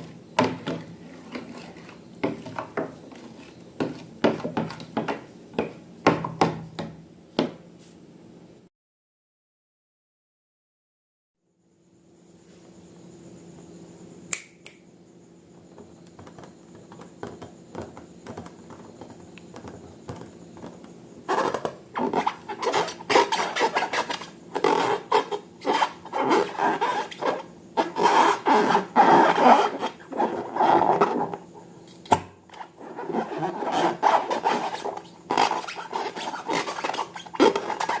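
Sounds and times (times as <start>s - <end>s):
faint steady hum: 0.0s - 8.7s, 11.4s - 38.0s
sharp click: 14.3s - 14.8s.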